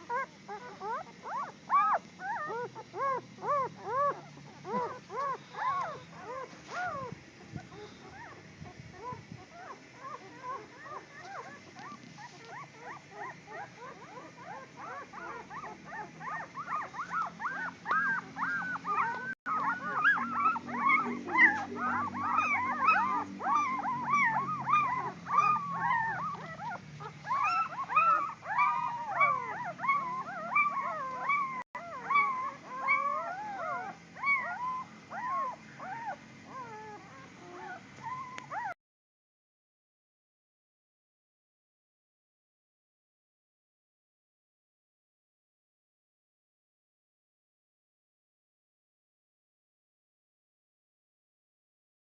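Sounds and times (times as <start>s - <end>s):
puppies whining and yelping: 0.0s - 38.8s.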